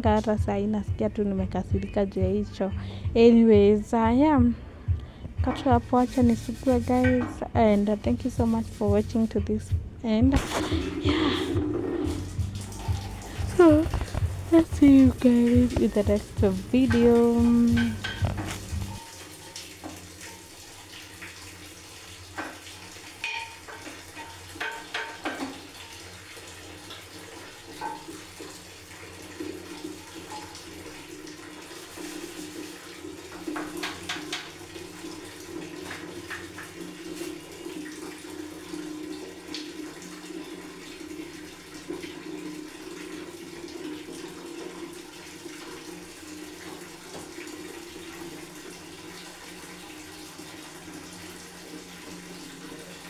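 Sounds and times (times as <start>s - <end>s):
water running from a tap: 0.0s - 53.0s
knocks and clatters of handling: 16.9s - 19.0s.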